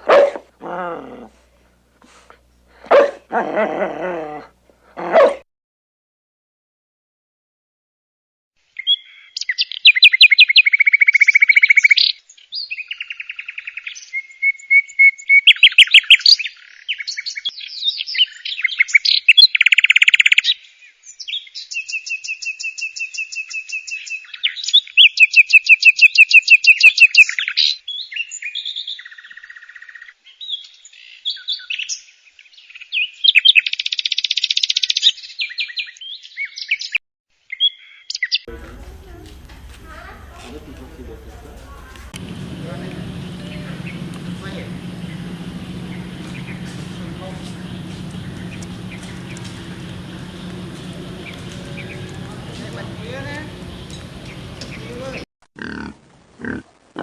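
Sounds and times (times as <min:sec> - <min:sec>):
songbird singing trills: 0:41.4 - 0:55.2.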